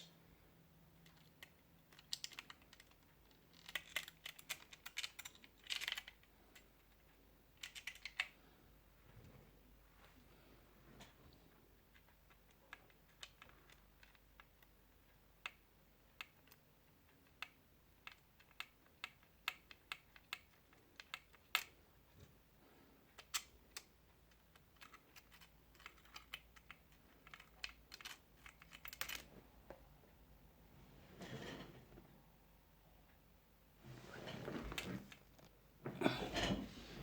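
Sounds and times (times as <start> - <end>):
small parts and tools clicking: 1.0 - 8.4, 11.9 - 21.8, 23.1 - 29.3.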